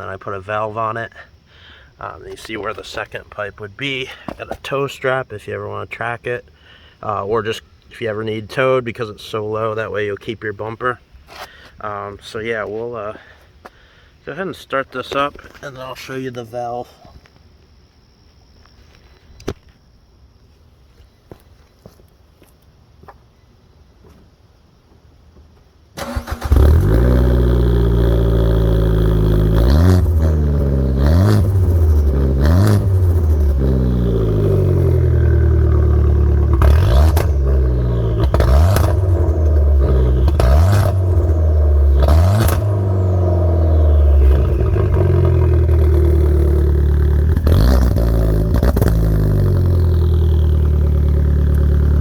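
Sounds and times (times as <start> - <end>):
car engine starting and revving: 26.0 - 52.0
exhaust cracks: 26.0 - 52.0.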